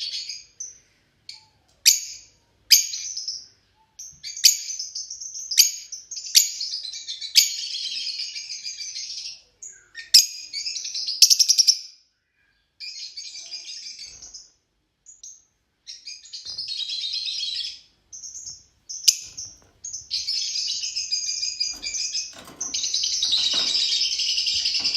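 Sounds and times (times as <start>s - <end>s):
lovebirds chattering: 15.1s - 24.9s
sharp bird chips: 18.2s - 24.9s.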